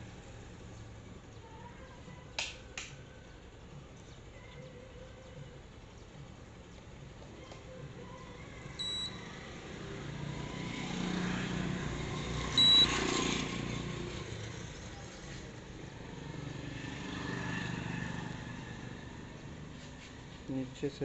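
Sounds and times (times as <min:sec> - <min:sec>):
passing road traffic: 0:06.5 - 0:21.0
short electronic beep: 0:08.8 - 0:09.2, 0:12.6 - 0:12.9.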